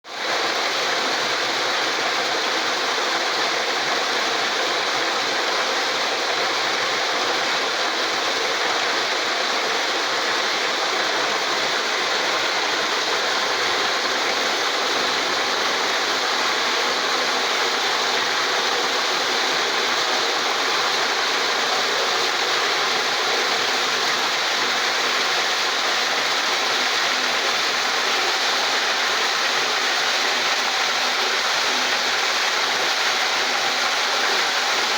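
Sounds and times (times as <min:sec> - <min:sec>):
rushing water: 0:00.1 - 0:34.9.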